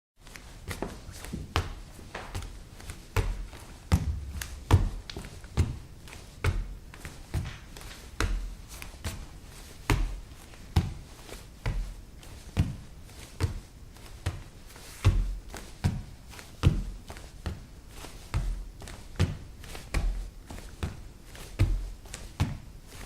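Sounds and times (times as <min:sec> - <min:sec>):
jumps thudding on laminate floor: 0:03.2 - 0:09.2.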